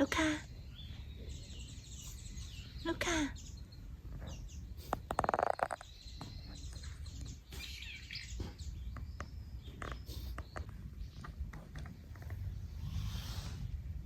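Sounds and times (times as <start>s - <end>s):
garden birds chirping: 0.0s - 14.0s.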